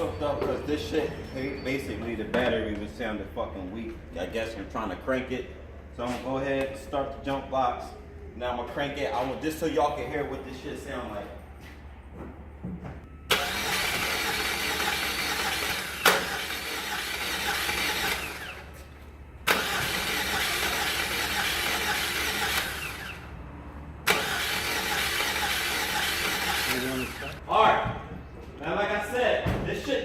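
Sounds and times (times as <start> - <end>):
engine cranking on starter: 13.3 - 18.7, 19.4 - 23.3, 24.0 - 27.4.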